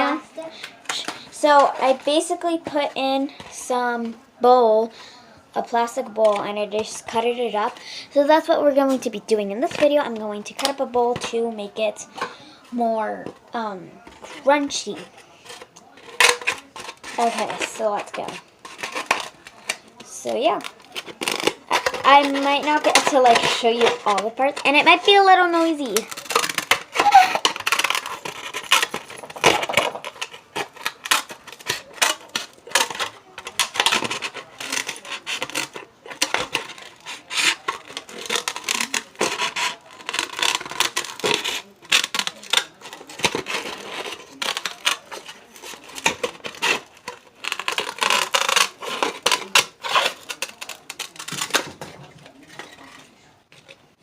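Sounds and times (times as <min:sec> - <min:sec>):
scissors cutting brittle plastic: 0:15.5 - 0:51.9.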